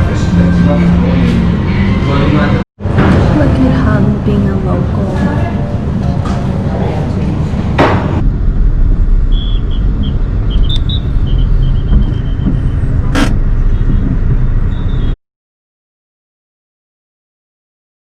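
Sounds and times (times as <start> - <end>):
road vehicle rumble: 0.0 - 15.2
wind noise: 7.4 - 15.2
whooshes: 7.6 - 14.6.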